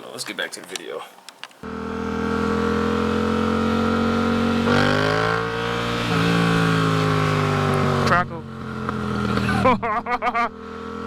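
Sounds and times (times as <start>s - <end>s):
motorcycle engine revving: 1.6s - 11.0s.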